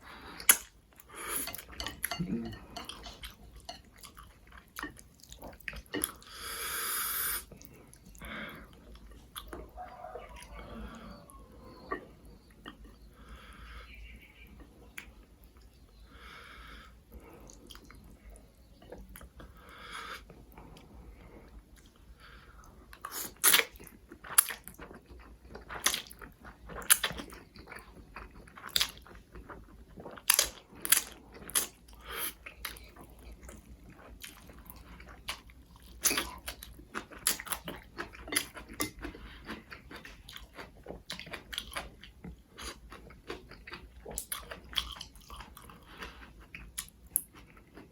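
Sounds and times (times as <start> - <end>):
wet mouth eating sounds: 22.9 - 47.9
biting and chewing crunches: 23.0 - 47.9.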